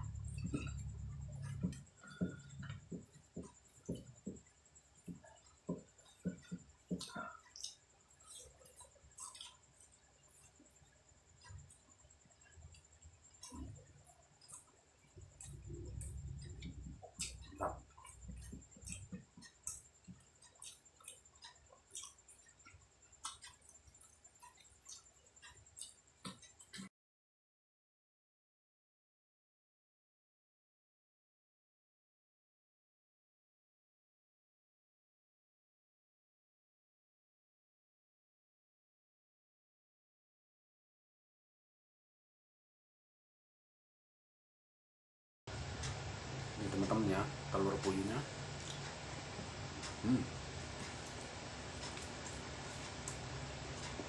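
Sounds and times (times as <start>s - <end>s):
low steady rumble: 0.0s - 2.8s, 15.2s - 19.0s
wet chewing: 0.2s - 26.9s, 47.8s - 54.0s.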